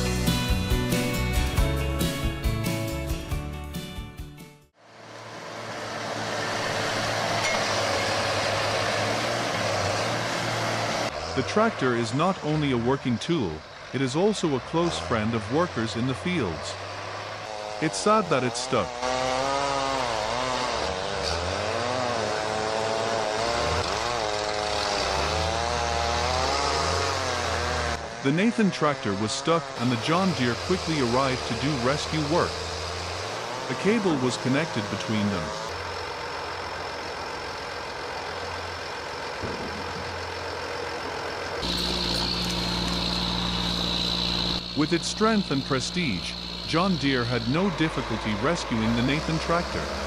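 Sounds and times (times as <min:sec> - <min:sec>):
tractor engine revving: 0:04.7 - 0:50.0
high whine: 0:41.6 - 0:50.0.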